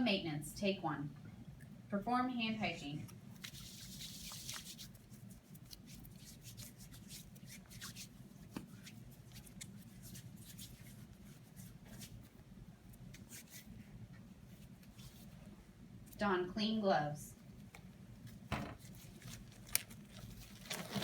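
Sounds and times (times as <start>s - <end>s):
hands rubbing together: 3.4s - 12.3s.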